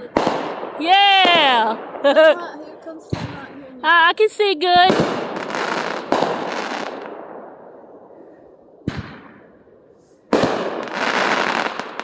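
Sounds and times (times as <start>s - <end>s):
firework bang: 0.0s - 2.3s, 3.0s - 3.6s, 4.9s - 7.7s, 8.8s - 9.6s, 10.3s - 12.0s
fireworks crackling: 0.0s - 7.6s, 10.0s - 12.0s.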